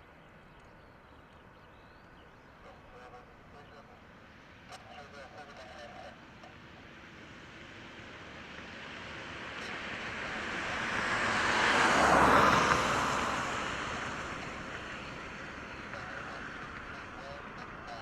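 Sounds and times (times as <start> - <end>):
vehicle passing close by: 6.6 - 18.0.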